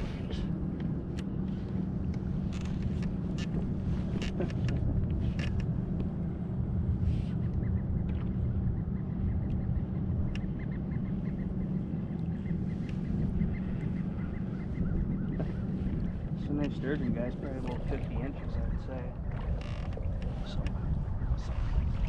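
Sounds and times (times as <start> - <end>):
low rumble with hum: 0.0 - 22.0
light ticks: 9.4 - 10.7.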